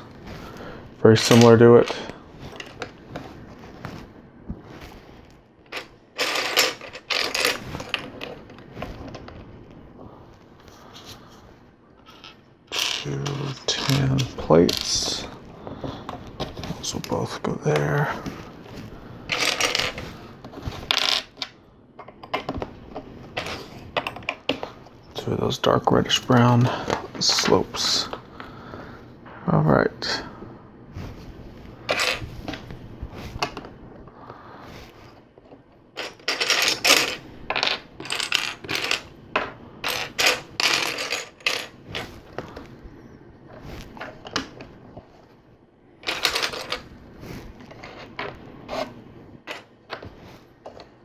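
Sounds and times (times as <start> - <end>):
plastic toy bricks clattering: 5.7 - 8.4, 12.1 - 15.2, 19.3 - 20.0, 36.0 - 41.8, 46.0 - 46.8.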